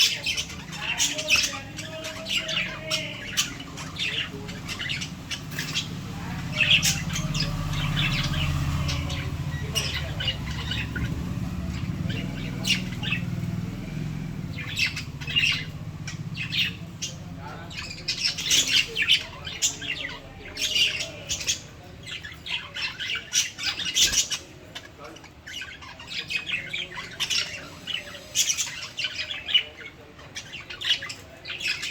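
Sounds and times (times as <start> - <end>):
lovebirds squawking and chirping: 0.0 - 31.9
steady low rumble: 3.2 - 22.2.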